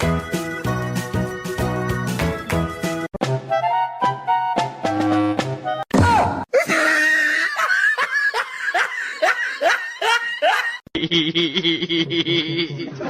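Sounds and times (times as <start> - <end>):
person laughing: 6.5 - 13.0.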